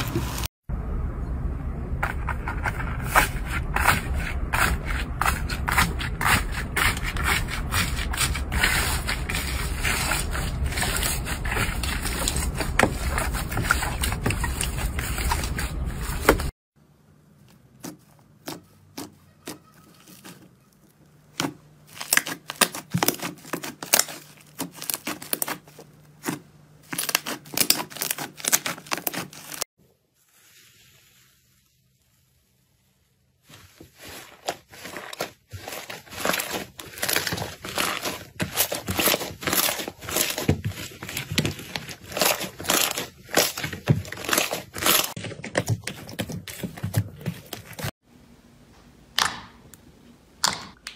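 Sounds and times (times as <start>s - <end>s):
slime crackling and popping: 34.8s - 45.7s.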